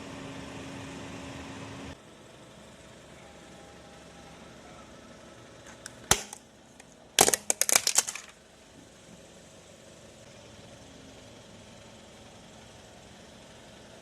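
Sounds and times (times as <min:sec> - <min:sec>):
plastic and glass cracking: 0:06.1 - 0:06.4, 0:07.2 - 0:08.3.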